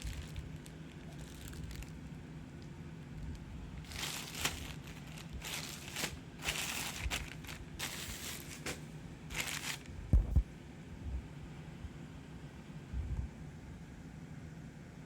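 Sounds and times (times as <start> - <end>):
packaging crinkling and rustling: 0.0 - 10.4.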